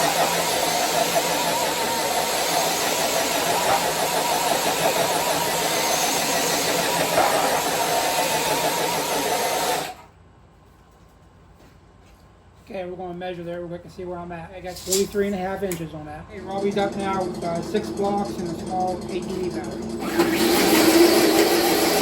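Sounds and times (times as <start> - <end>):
high motor whine: 0.0 - 10.1, 16.2 - 22.0
toy truck motor and gears: 0.0 - 10.1, 16.6 - 22.0.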